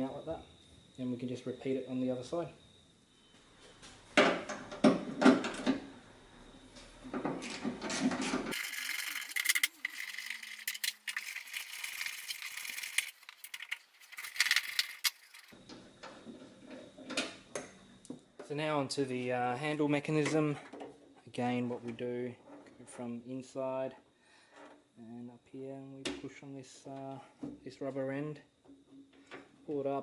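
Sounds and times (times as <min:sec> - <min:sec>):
small parts rattling and scraping: 0:07.8 - 0:15.6.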